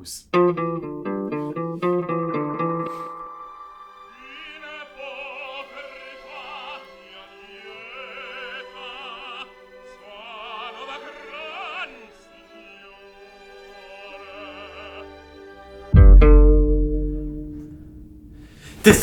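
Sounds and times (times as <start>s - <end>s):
sustained accompanying notes: 0.4s - 7.0s, 15.9s - 19.0s
operatic singing with vibrato: 2.6s - 15.9s.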